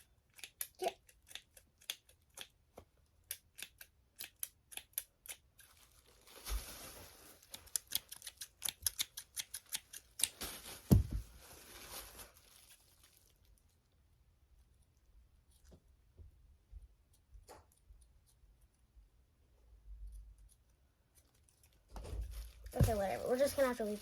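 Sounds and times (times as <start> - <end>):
scissors snipping: 0.0 - 2.6, 3.2 - 5.7, 7.5 - 10.3
scratchy rustling of handling: 5.6 - 13.9, 20.0 - 24.0
thump: 10.9 - 11.3.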